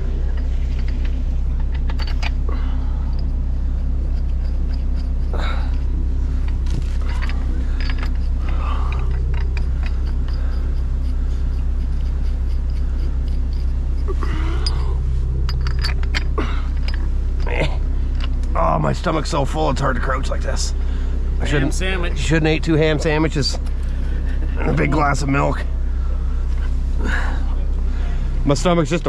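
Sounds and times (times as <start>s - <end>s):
machine engine idling: 0.0s - 29.0s
light metallic clinks: 4.1s - 17.5s.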